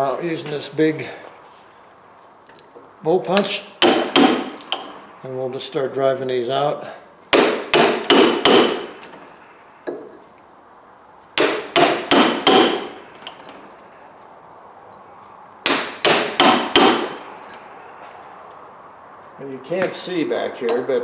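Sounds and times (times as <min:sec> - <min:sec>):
hammer striking metal punch: 0:03.4 - 0:05.0, 0:07.3 - 0:09.1, 0:11.4 - 0:13.4, 0:15.6 - 0:17.3, 0:20.6 - 0:21.0.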